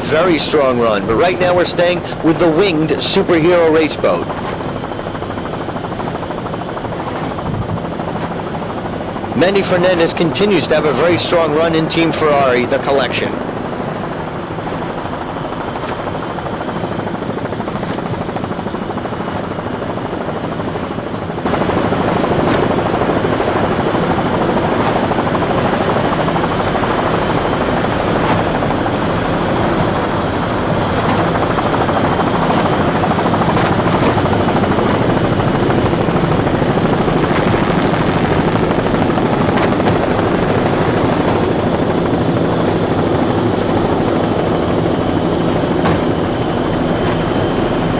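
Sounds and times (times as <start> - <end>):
helicopter engine and rotor: 0.0 - 47.9.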